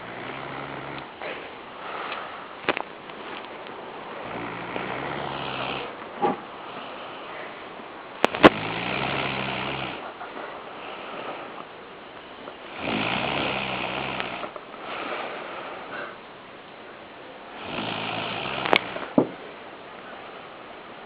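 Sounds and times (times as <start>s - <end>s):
person snoring: 0.0s - 1.4s, 4.2s - 6.0s, 8.4s - 10.0s, 12.7s - 14.5s, 17.6s - 19.1s.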